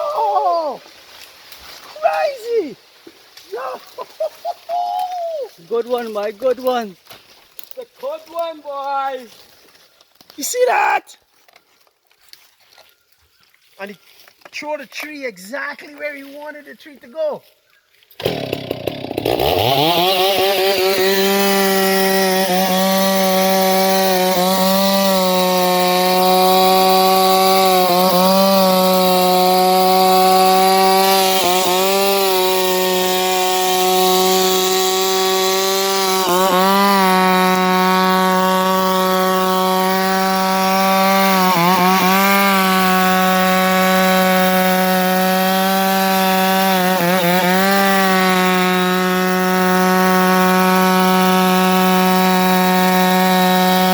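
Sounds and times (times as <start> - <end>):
chainsaw cutting wood: 18.0 - 53.9.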